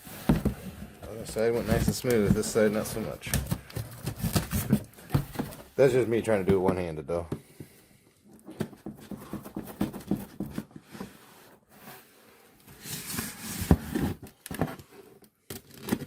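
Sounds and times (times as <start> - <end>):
cardboard knocking and rustling: 0.0 - 6.8, 8.4 - 11.5, 12.8 - 14.9.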